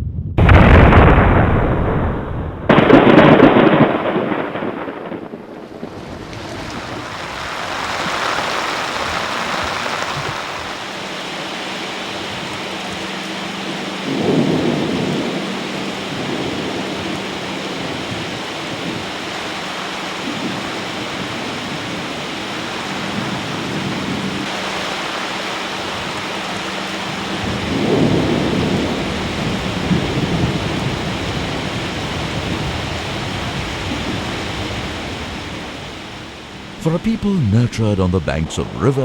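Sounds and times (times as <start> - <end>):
rolling thunder: 0.0 - 10.8, 14.1 - 24.6, 27.0 - 36.4
heavy rain: 0.4 - 39.0.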